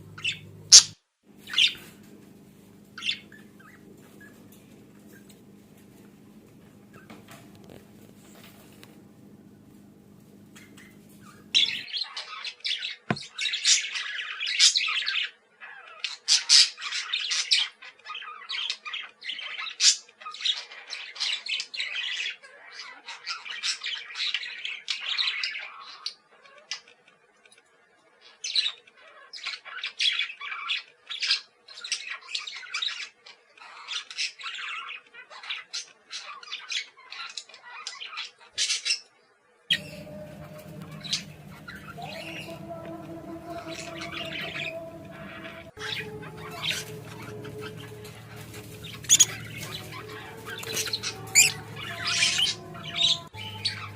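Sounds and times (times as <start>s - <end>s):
budgies chirping and squawking: 0.0s - 26.8s, 28.4s - 39.1s, 39.7s - 53.9s.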